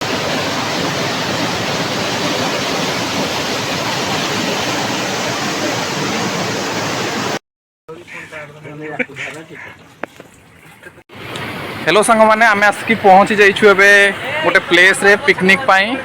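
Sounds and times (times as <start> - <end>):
waterfall rushing: 0.0 - 7.4.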